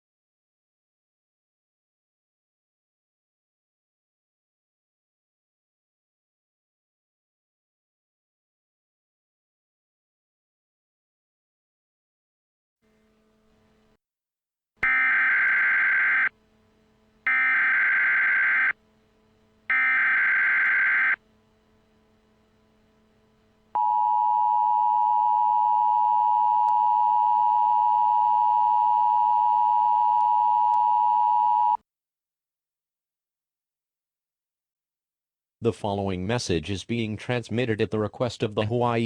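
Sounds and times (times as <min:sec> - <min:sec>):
digital data bursts: 0:14.8 - 0:16.3, 0:17.3 - 0:18.8, 0:19.7 - 0:21.2
two-tone attention signal: 0:14.8 - 0:16.4, 0:17.3 - 0:18.8, 0:19.7 - 0:21.2.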